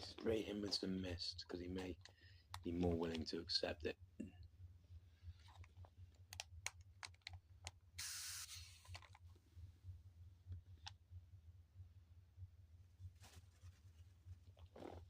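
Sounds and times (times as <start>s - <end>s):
spray bottle hissing: 8.0s - 8.8s.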